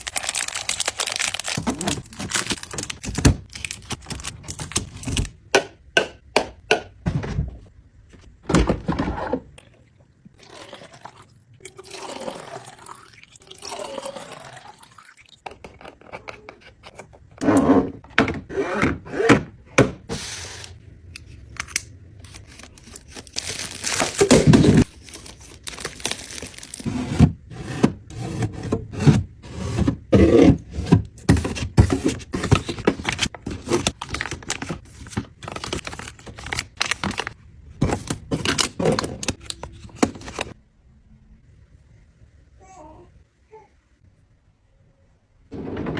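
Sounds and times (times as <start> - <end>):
packaging crinkling and tearing: 0.0 - 5.4, 21.6 - 26.9, 32.0 - 40.6
containers clacking and knocking: 29.8 - 40.6.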